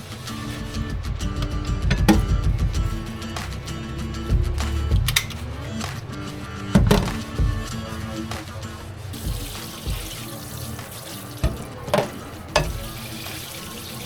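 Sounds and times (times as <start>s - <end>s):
tap water running into sink: 0.0s - 2.8s, 6.7s - 7.4s, 9.1s - 14.0s
soft background music: 0.0s - 14.0s
sharp clunks: 0.7s - 3.7s, 6.7s - 7.7s, 11.4s - 12.8s.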